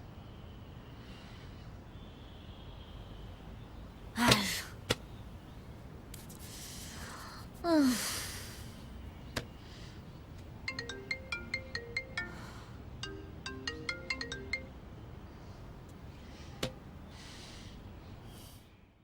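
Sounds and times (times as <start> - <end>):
phone ringtone melody: 10.6 - 15.1.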